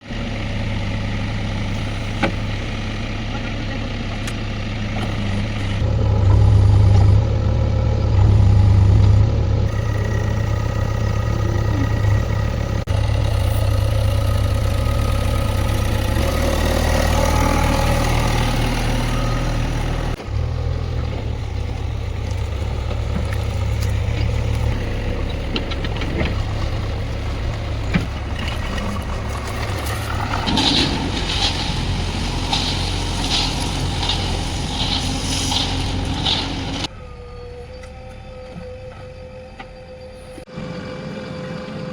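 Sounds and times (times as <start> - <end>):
diesel engine revving: 0.0 - 36.9.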